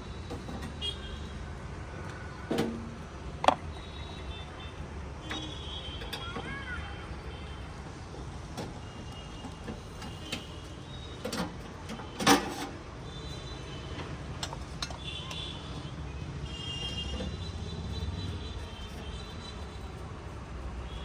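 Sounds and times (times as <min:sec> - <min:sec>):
sharp clicks and knocks: 0:03.4 - 0:03.8.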